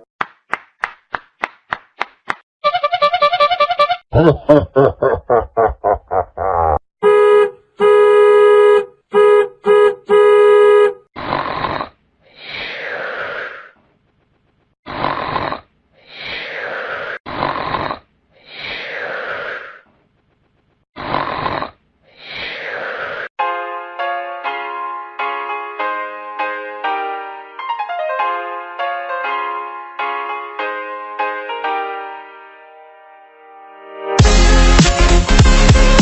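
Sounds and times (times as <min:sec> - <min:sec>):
buzzy horn-like tone: 0:02.6 - 0:04.0, 0:07.0 - 0:11.0.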